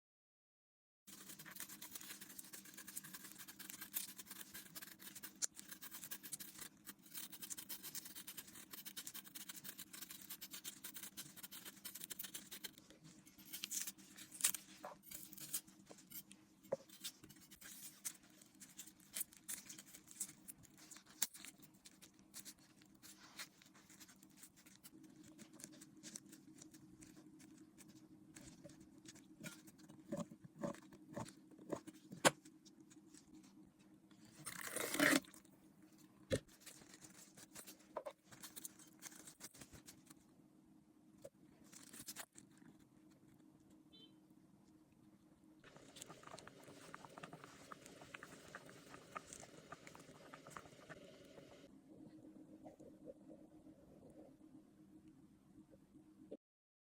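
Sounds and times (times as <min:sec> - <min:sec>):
scratching and scraping: 0:01.1 - 0:33.5, 0:34.2 - 0:35.4
faint steady hum: 0:01.1 - 0:56.4.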